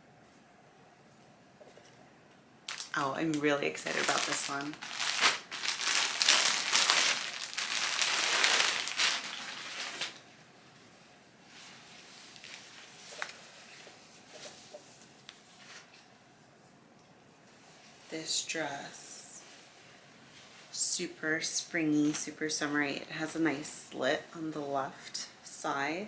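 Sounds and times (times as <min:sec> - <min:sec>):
packaging crinkling and rustling: 0:02.7 - 0:10.3, 0:11.7 - 0:13.5.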